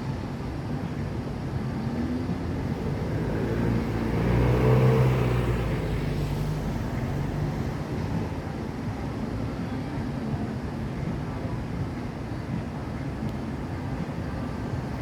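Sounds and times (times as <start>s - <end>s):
steady traffic hum: 0.0s - 15.0s
vehicle engine passing by: 2.0s - 7.9s.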